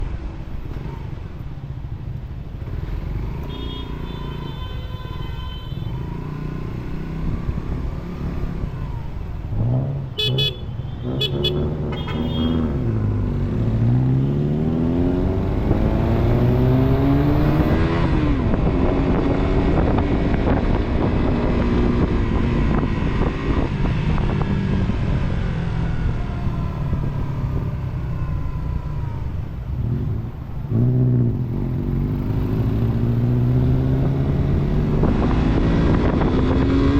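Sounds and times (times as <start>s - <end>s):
vehicle engine accelerating: 11.0s - 36.9s.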